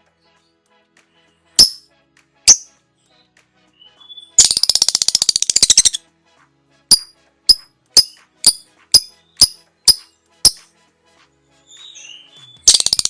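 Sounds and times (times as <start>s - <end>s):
lovebird chirping and trilling: 1.6s - 1.8s, 2.5s - 2.7s, 3.8s - 6.0s, 6.9s - 10.6s, 11.7s - 13.0s.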